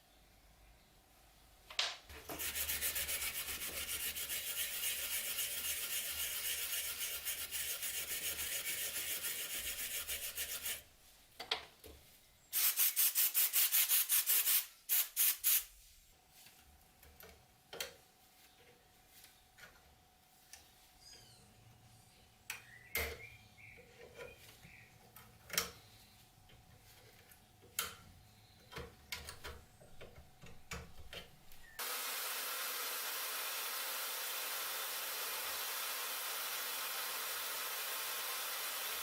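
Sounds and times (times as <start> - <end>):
abrasive scrubbing on metal: 2.2 - 10.8.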